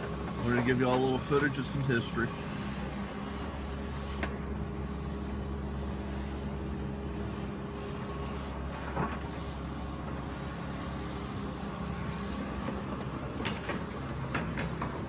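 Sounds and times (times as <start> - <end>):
engine running: 0.0 - 15.0
sharp knocks and clatters: 12.6 - 15.0.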